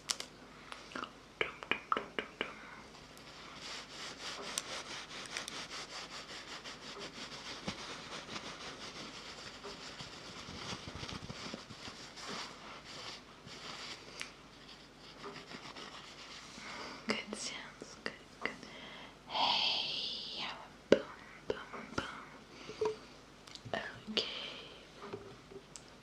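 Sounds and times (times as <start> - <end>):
close rubbing or scratching: 3.2 - 16.8.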